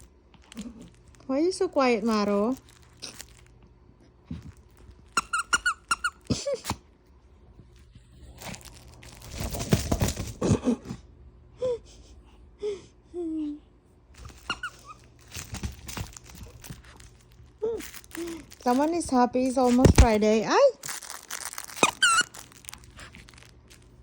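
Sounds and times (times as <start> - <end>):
dog chewing and rustling: 2.0 - 6.6, 7.4 - 10.3, 14.2 - 24.0
squeaky toy squeaks: 5.1 - 6.5, 14.2 - 15.1, 20.9 - 22.8.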